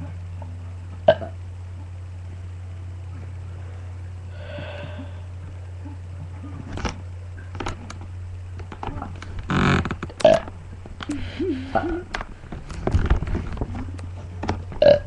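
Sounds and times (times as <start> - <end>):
low microphone hum: 0.0 - 15.0
breathy sniffing: 4.3 - 5.3, 11.0 - 12.0.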